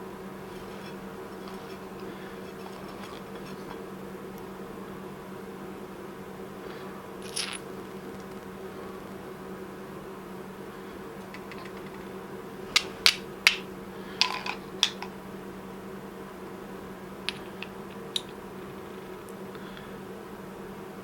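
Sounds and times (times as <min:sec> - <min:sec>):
steady low hum: 0:00.0 - 0:21.0
fire striker scraping flint: 0:00.5 - 0:03.8.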